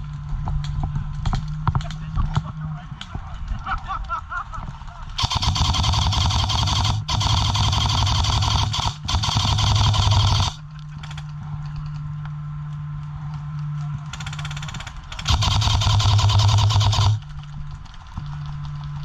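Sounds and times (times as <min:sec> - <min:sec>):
airsoft gun rapid clicking: 0:05.1 - 0:12.0, 0:14.0 - 0:19.0
motor whine: 0:05.2 - 0:10.6, 0:15.3 - 0:17.2
low hum: 0:05.2 - 0:19.0.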